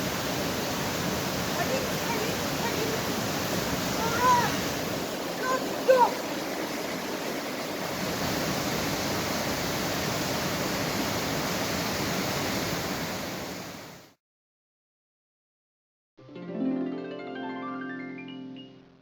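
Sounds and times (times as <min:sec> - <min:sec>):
waterfall roaring: 0:00.0 - 0:14.0.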